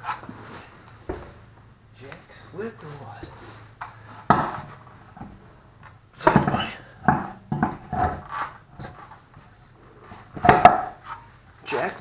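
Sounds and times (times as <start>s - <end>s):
metallic clanks and knocks: 4.2s - 5.4s, 6.2s - 8.9s, 10.3s - 11.0s.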